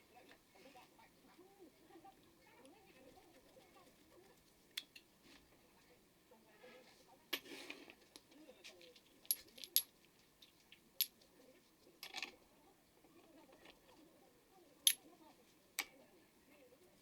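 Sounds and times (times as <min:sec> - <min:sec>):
metal parts clinking on workbench: 0:09.3 - 0:09.9.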